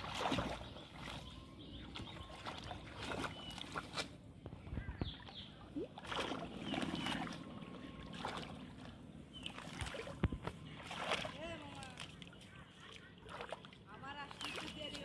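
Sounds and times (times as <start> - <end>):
shallow water splashing: 0.0 - 15.0.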